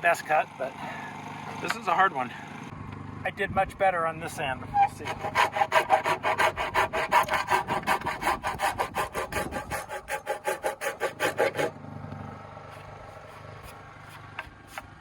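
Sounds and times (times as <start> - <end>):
handsaw cutting wood: 4.7 - 11.8.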